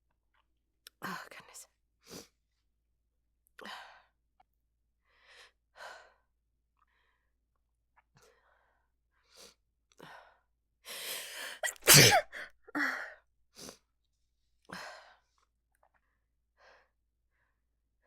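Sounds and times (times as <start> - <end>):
woman breathing: 8.3 - 13.7
woman sneezing: 11.6 - 12.5.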